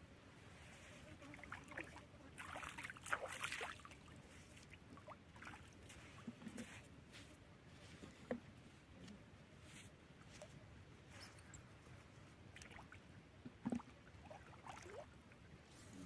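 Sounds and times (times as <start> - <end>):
water splashing and trickling: 1.2 - 6.7, 11.2 - 16.0
small splashes and clicks: 1.6 - 6.4, 12.5 - 15.1.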